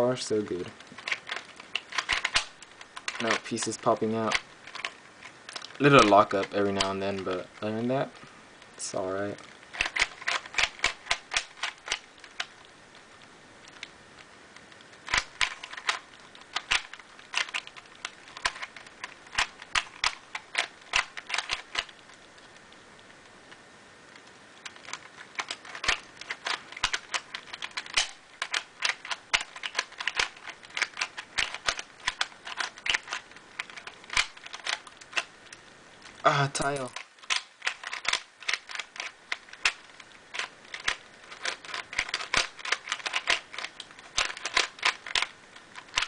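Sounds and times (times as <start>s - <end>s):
puzzle cube plastic clicks: 0.1s - 46.0s.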